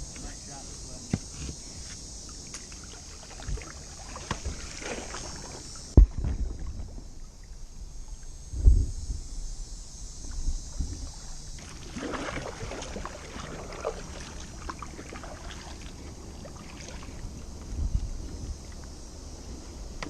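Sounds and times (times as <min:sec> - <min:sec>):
water splashes and drips: 0:02.4 - 0:08.3, 0:10.3 - 0:18.9
wind rumble on microphone: 0:03.0 - 0:20.0
low thumps: 0:05.9 - 0:07.2, 0:08.5 - 0:09.4.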